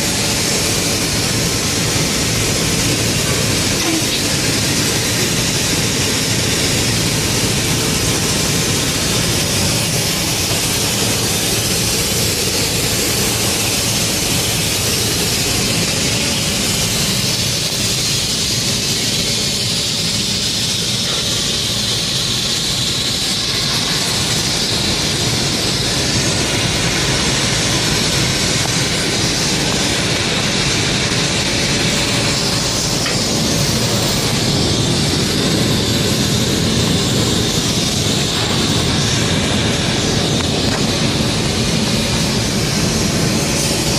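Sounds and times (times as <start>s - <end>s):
welding arc hissing: 0.0s - 43.9s.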